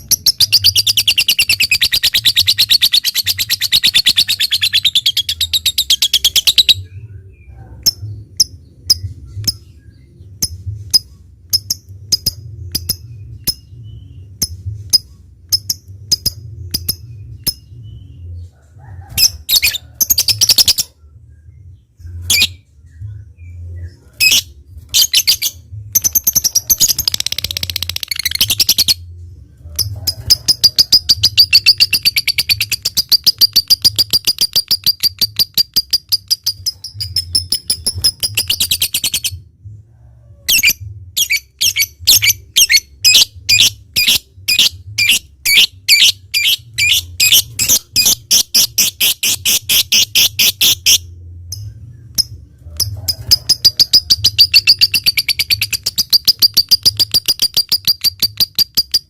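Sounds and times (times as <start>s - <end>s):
lovebird chattering trill: 0.0s - 6.8s, 29.8s - 39.3s, 40.5s - 51.1s, 52.2s - 59.0s.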